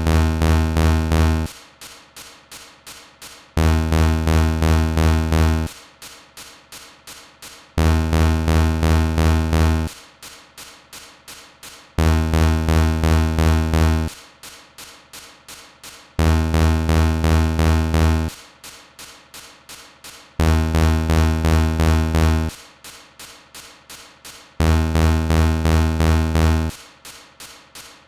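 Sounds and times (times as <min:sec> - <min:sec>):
low buzzing drone: 0:00.0 - 0:01.5, 0:03.6 - 0:05.7, 0:07.8 - 0:09.9, 0:12.0 - 0:14.1, 0:16.2 - 0:18.3, 0:20.4 - 0:22.5, 0:24.6 - 0:26.7
rapid electronic pulses: 0:00.0 - 0:01.5, 0:03.6 - 0:05.7, 0:07.8 - 0:09.9, 0:12.0 - 0:14.1, 0:16.2 - 0:18.4, 0:20.4 - 0:22.6, 0:24.6 - 0:26.8.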